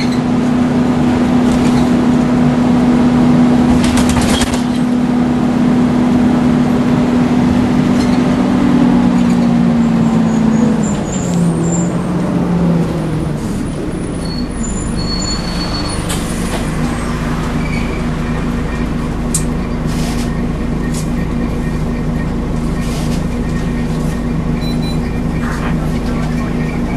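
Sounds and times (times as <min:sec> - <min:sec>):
bus engine drone: 0:00.0 - 0:26.9
short high-pitched squeals: 0:14.2 - 0:16.2.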